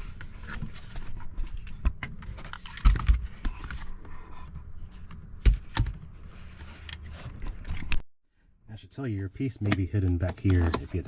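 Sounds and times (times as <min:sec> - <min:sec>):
handling clicks and knocks: 0:09.6 - 0:11.0.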